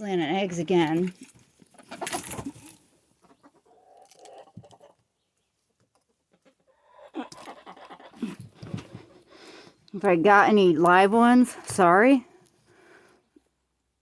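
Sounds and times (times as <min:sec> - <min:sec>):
hen clucking: 0:01.7 - 0:05.0, 0:06.0 - 0:09.3.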